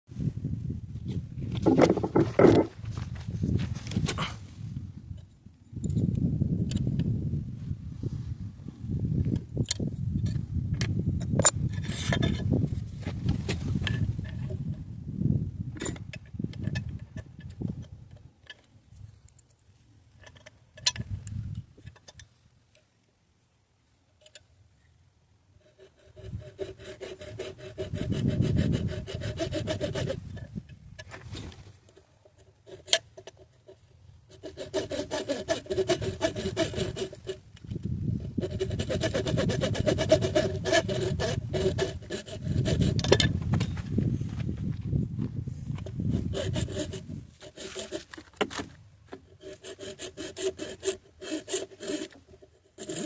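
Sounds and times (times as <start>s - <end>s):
hand file rasping on metal: 25.6s - 30.5s, 32.4s - 37.4s, 38.2s - 43.2s, 46.1s - 48.2s, 49.2s - 53.0s.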